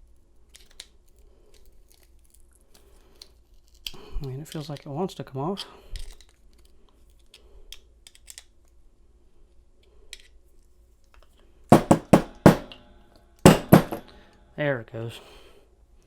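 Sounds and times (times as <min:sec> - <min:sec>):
loud sharp taps: 0:11.8 - 0:12.9, 0:13.5 - 0:14.2.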